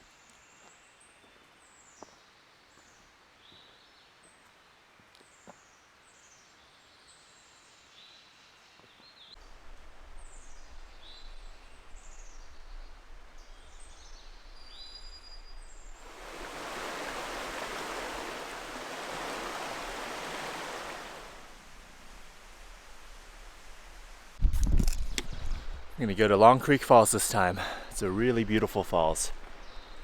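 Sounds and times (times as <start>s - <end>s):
small birds chirping: 8.0s - 18.8s, 25.0s - 30.0s
steady rushing noise: 15.9s - 24.6s.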